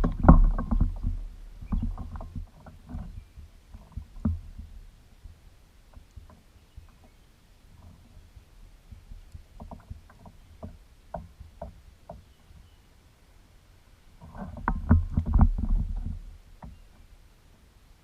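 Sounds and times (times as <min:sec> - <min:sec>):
thumps and knocks: 0:00.0 - 0:04.7, 0:14.2 - 0:16.8.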